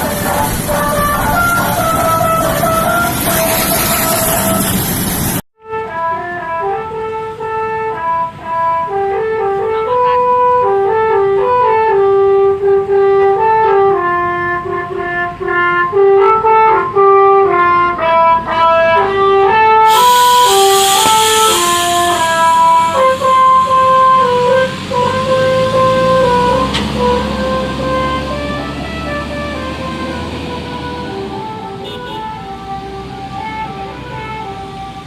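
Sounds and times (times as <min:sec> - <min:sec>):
loud rushing noise: 0:00.0 - 0:05.4, 0:17.9 - 0:33.7
bus air horns playing a melody: 0:00.0 - 0:35.0.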